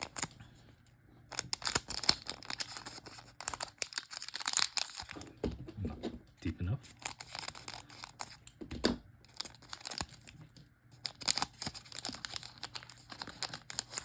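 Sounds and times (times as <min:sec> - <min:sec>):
wrapper tearing and crinkling: 0:00.0 - 0:00.3, 0:01.3 - 0:05.2, 0:06.8 - 0:08.4, 0:09.2 - 0:10.4, 0:11.0 - 0:14.0.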